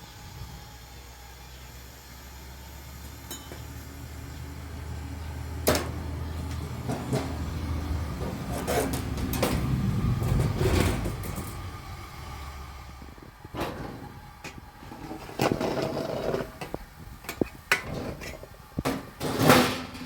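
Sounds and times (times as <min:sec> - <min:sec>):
low rumble: 0:04.8 - 0:19.3.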